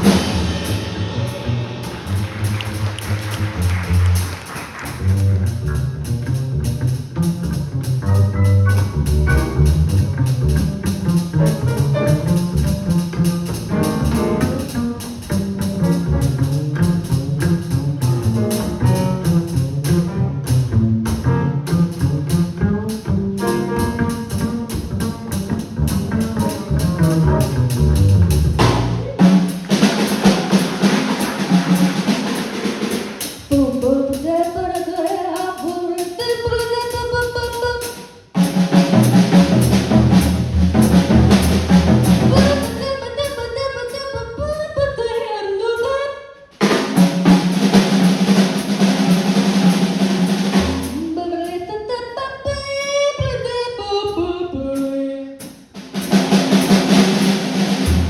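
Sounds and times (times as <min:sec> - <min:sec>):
bass line: 0:00.0 - 0:32.6, 0:38.4 - 0:43.1, 0:56.2 - 0:58.0
jazz music: 0:00.0 - 0:33.8, 0:37.8 - 0:43.0, 0:46.6 - 0:51.1, 0:55.8 - 0:58.0
drum kit: 0:00.0 - 0:44.0, 0:46.6 - 0:51.6, 0:54.1 - 0:58.0.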